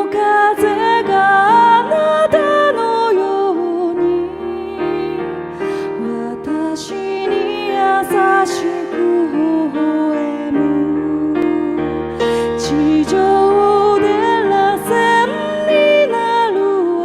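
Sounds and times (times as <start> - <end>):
piano accompaniment: 0.0 - 17.0
woman singing ballad: 0.0 - 17.0.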